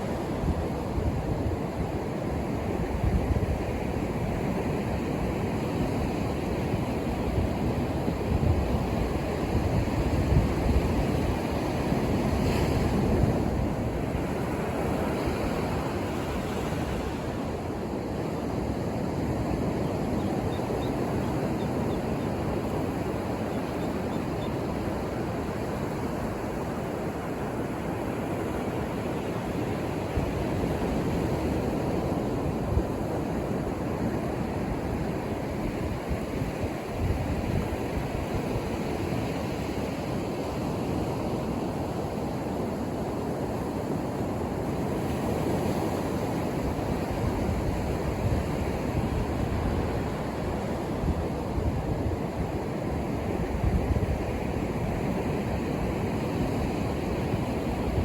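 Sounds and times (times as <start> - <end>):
wind on microphone: 0.0 - 27.2, 43.9 - 58.0
waves breaking on beach: 0.0 - 58.0.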